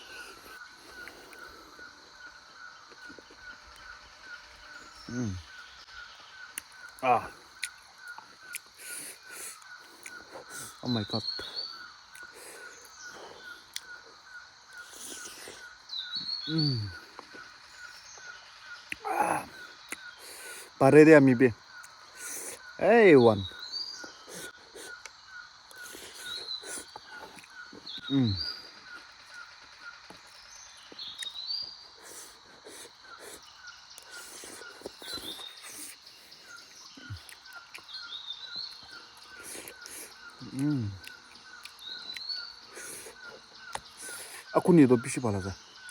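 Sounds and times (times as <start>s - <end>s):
faint repeating chirping: 0.0s - 45.9s
person humming: 5.1s - 5.4s, 16.5s - 17.0s, 28.1s - 28.4s.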